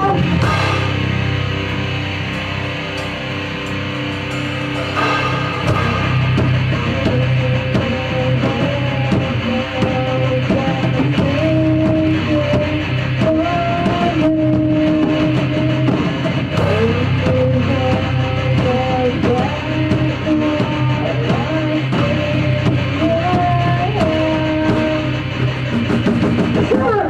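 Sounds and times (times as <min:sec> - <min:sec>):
bending guitar lead notes: 0:00.0 - 0:13.8
rock band playing: 0:00.0 - 0:27.0.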